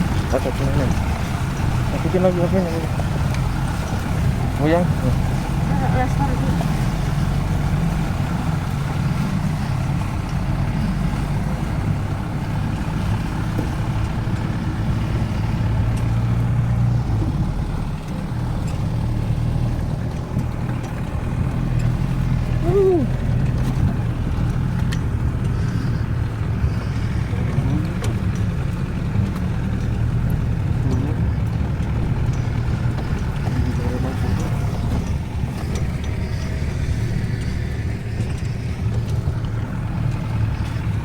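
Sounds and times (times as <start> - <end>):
off-road vehicle engine running: 0.0 - 41.0.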